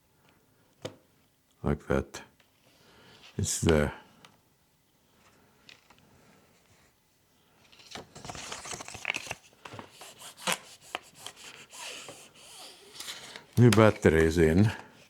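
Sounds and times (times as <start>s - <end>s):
plastic rustling and crinkling: 7.6s - 14.8s.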